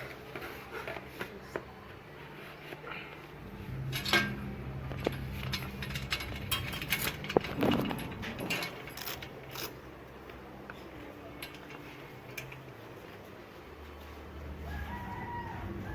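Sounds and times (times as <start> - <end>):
metallic clicks and knocks of bike parts: 3.7 - 12.8.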